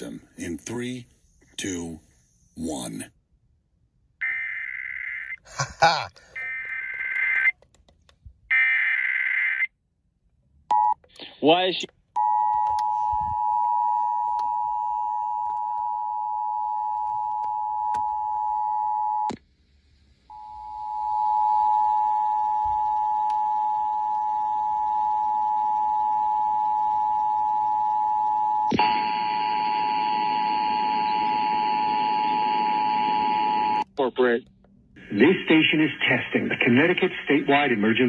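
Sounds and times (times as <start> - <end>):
two-tone alarm: 4.2 - 5.4, 6.4 - 7.5, 12.2 - 19.3, 20.3 - 33.9.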